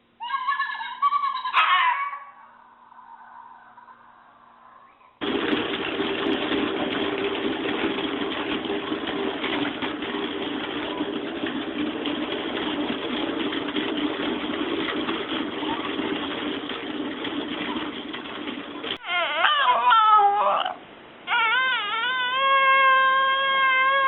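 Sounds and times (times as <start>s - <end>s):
mechanical drone with hum: 3.9s - 19.0s.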